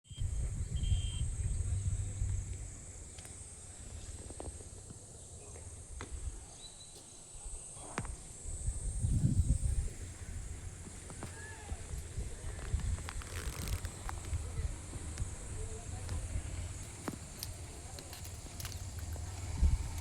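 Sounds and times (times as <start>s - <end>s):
low rumble: 0.1s - 6.4s
insects chorus: 0.1s - 20.0s.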